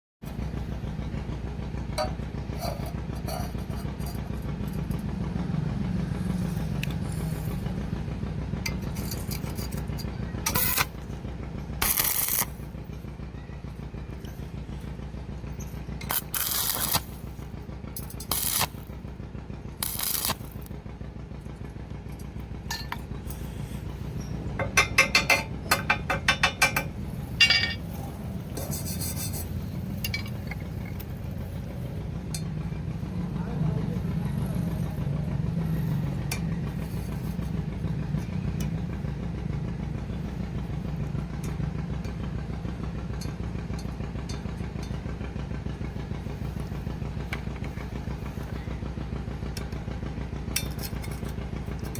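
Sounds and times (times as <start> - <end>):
low electrical hum: 0.2 - 51.9
welding arc hiss: 11.8 - 12.6, 16.1 - 17.2, 18.2 - 18.8, 19.8 - 20.7.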